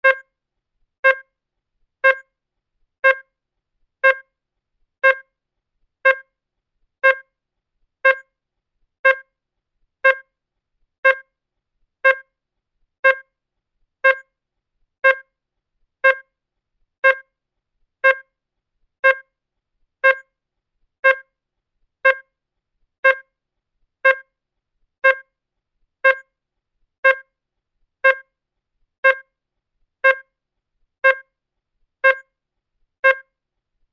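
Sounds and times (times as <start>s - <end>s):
digital clock ticking: 0.0s - 0.2s, 1.0s - 1.2s, 2.0s - 2.2s, 3.0s - 3.2s, 4.0s - 4.2s, 5.0s - 5.2s, 6.0s - 6.2s, 7.0s - 7.2s, 8.0s - 8.2s, 9.0s - 9.2s, 10.0s - 10.3s, 11.0s - 11.2s, 12.0s - 12.2s, 13.0s - 13.2s, 14.0s - 14.2s, 15.0s - 15.2s, 16.0s - 16.2s, 17.0s - 17.2s, 18.0s - 18.2s, 19.0s - 19.2s, 20.0s - 20.2s, 21.0s - 21.2s, 22.0s - 22.2s, 23.0s - 23.2s, 24.0s - 24.2s, 25.0s - 25.2s, 26.0s - 26.2s, 27.0s - 27.2s, 28.0s - 28.2s, 29.0s - 29.2s, 30.0s - 30.2s, 31.0s - 31.2s, 32.0s - 32.2s, 33.0s - 33.2s.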